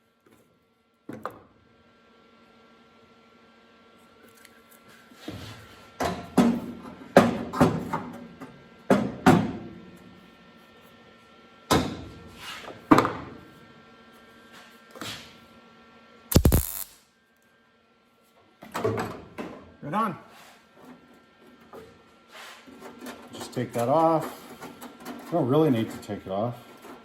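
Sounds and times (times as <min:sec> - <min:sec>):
sharp crackling burst: 0:16.3 - 0:17.0.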